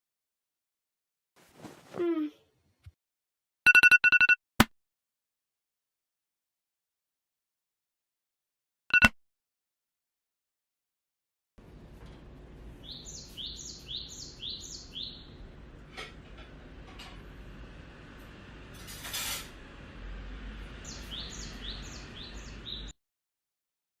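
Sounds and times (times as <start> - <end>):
bird chirping: 12.8 - 15.4, 20.8 - 23.0
low steady hum: 15.1 - 18.9.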